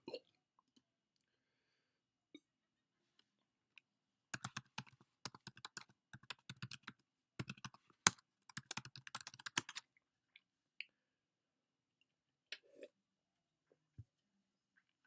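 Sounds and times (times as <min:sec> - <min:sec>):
rapid clicking and tapping: 0:04.4 - 0:09.8.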